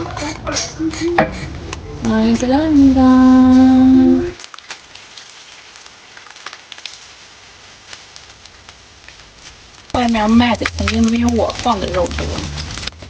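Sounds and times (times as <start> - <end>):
food sizzling in a frying pan: 2.1 - 13.0
person holding a vocal note: 3.1 - 4.4.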